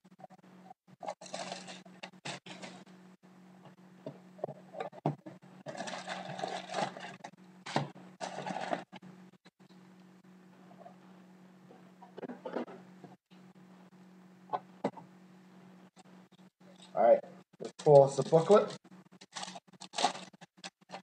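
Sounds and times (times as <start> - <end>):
faint steady hum: 0.0 - 21.0
packaging rustling and crinkling: 1.0 - 2.8, 5.6 - 8.9, 17.8 - 21.0.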